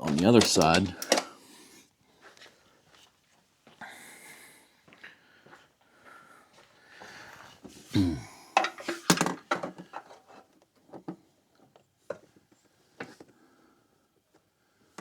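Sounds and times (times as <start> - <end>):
hand tools clicking and knocking: 0.0 - 1.3.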